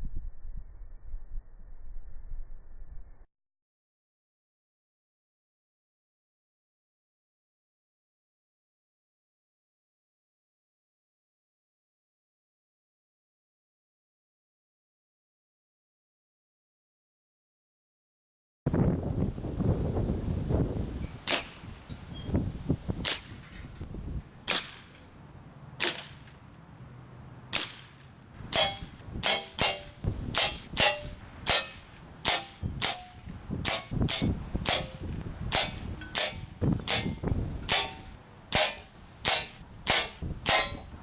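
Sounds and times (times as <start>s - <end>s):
low rumble: 0.0s - 3.3s
air gun shots: 21.2s - 21.7s, 23.0s - 23.6s, 24.5s - 25.1s, 25.8s - 26.4s, 27.5s - 40.9s.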